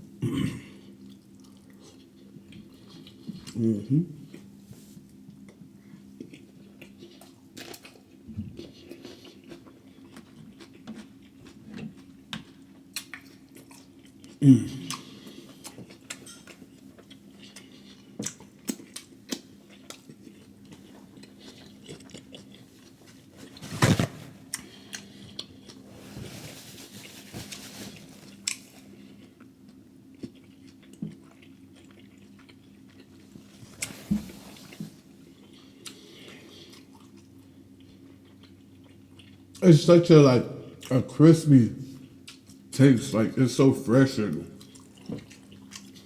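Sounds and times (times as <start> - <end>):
wet chewing and smacking: 5.2 - 23.6, 28.2 - 34.0, 35.2 - 39.6, 42.0 - 42.7, 44.6 - 46.0.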